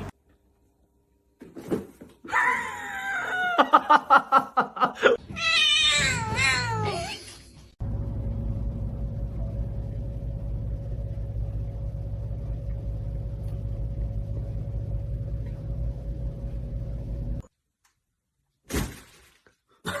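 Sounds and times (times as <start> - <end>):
low mechanical rumble: 7.8 - 17.4.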